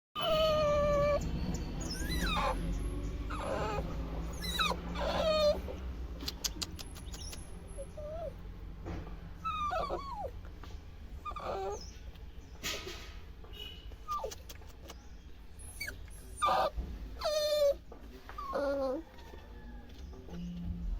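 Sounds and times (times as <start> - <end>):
small pet animal whining: 0.2 - 5.8, 6.6 - 8.4, 9.4 - 10.6, 11.2 - 12.0, 14.1 - 14.4, 15.6 - 19.4.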